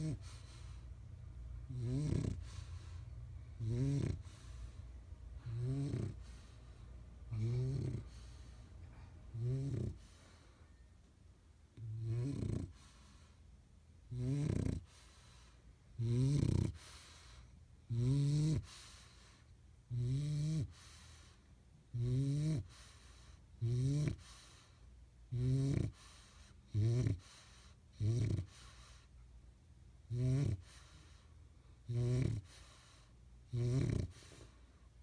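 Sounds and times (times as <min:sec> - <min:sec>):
loud snoring: 0:00.0 - 0:00.7, 0:01.6 - 0:06.6, 0:07.3 - 0:08.4, 0:09.3 - 0:10.1, 0:11.8 - 0:12.9, 0:14.1 - 0:15.0, 0:16.0 - 0:17.0, 0:17.9 - 0:18.9, 0:19.9 - 0:20.9, 0:21.9 - 0:22.9, 0:23.6 - 0:24.4, 0:25.3 - 0:27.4, 0:28.0 - 0:28.8, 0:30.1 - 0:31.0, 0:31.8 - 0:32.7, 0:33.5 - 0:34.4
quiet breathing: 0:00.0 - 0:14.0, 0:14.8 - 0:17.9, 0:18.5 - 0:19.9, 0:20.6 - 0:21.9, 0:22.5 - 0:35.0.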